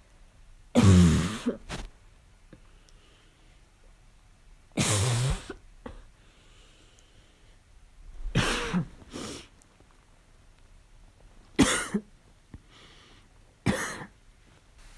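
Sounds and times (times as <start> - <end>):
person coughing harshly: 0.8 - 1.6, 8.3 - 9.0, 11.6 - 12.1, 13.6 - 14.2.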